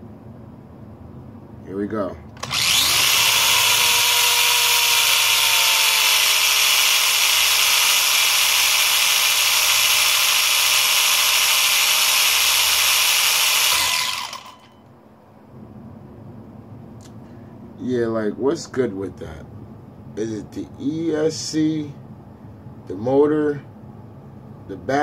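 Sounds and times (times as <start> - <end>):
electric motor high-pitched whine: 2.4 - 14.8.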